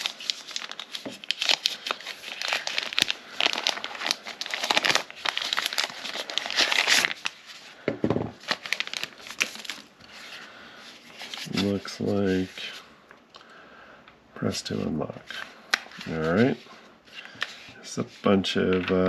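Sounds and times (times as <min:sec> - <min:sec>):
plastic packaging crinkling: 0:00.0 - 0:07.8, 0:08.4 - 0:12.5.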